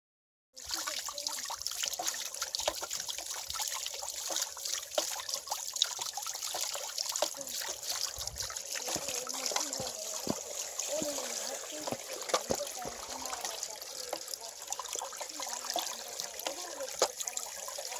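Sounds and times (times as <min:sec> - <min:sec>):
water drips: 0:00.6 - 0:17.9
water trickling and splashing: 0:00.6 - 0:17.9.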